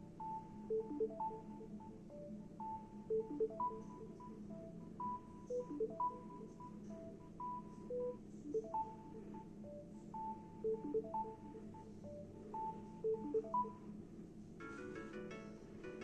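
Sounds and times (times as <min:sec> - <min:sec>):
electronic ringtone melody: 0:00.0 - 0:04.2, 0:05.0 - 0:06.6.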